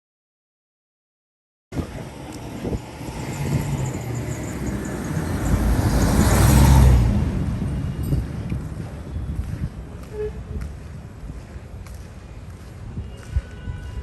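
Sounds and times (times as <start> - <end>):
vehicle passing close: 1.8 - 10.1.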